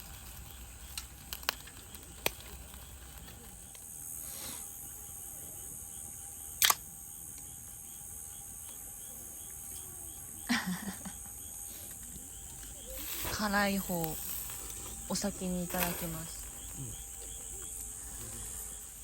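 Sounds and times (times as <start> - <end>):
insects trilling: 0.0 - 19.0
sharp clicks: 6.6 - 7.5.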